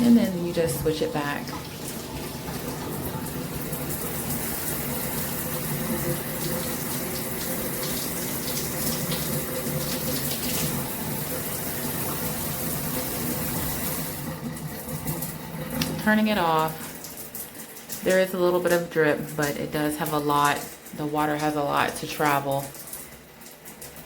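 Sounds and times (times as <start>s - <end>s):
shower water spraying and splashing: 0.0s - 24.0s.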